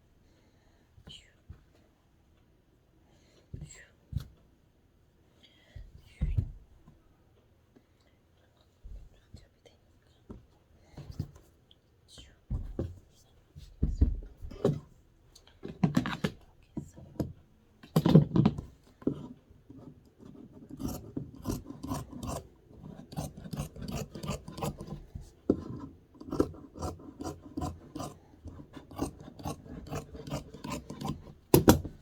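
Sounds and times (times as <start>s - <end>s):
fabric cutter rasping through cloth: 20.6s - 32.0s.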